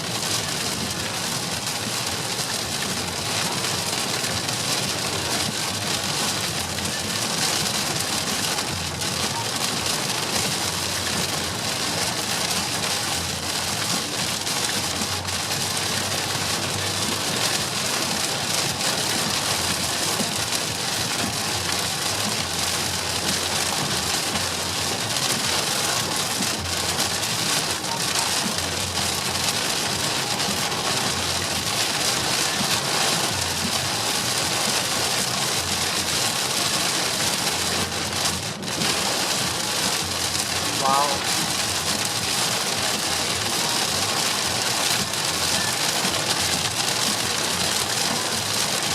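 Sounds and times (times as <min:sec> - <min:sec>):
heavy rain on a car: 0:00.0 - 0:48.9
tyre spray on wet road: 0:00.0 - 0:48.9.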